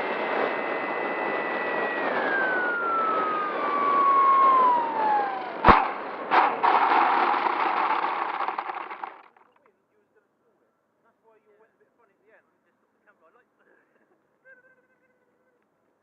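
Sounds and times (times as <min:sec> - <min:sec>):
quadcopter motors whining: 0:00.0 - 0:09.1
sharp knock: 0:05.6 - 0:07.3.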